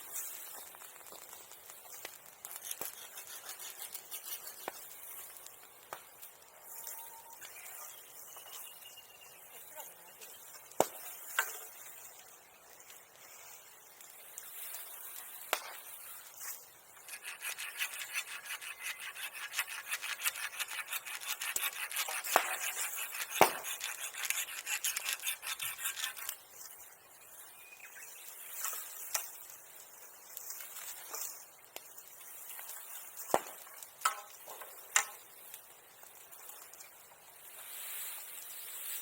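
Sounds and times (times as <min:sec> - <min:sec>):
hand saw cutting wood: 0:17.1 - 0:26.4
sharp cracks: 0:20.6 - 0:25.2.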